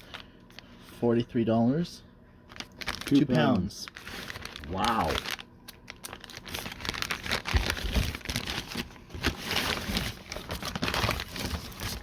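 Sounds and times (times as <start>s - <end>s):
plastic packaging crinkling: 2.5s - 12.0s.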